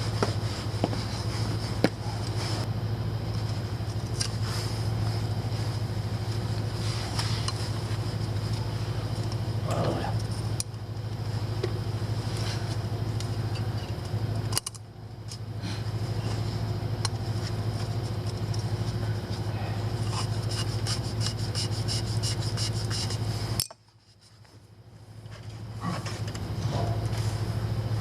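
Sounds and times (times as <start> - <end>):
low mechanical hum: 0.0 - 28.0
scrapes and clicks of hand work: 20.0 - 24.6.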